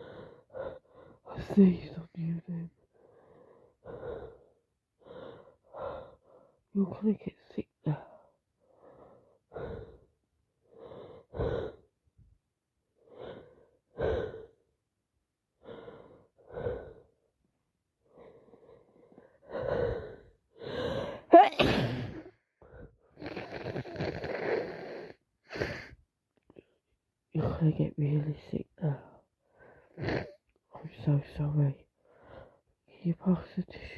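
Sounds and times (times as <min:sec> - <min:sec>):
woman sneezing: 0:21.3 - 0:22.3.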